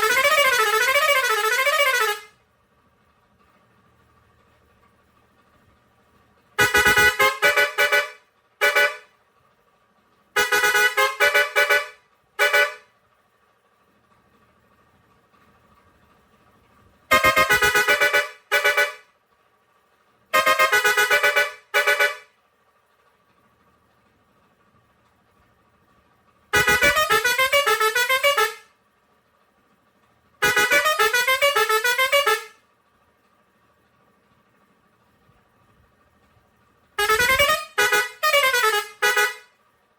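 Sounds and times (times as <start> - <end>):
air horn playing a melody: 0.0 - 2.3, 6.6 - 9.1, 10.4 - 12.8, 17.1 - 19.0, 20.4 - 22.3, 26.5 - 28.7, 30.4 - 32.6, 37.0 - 39.5.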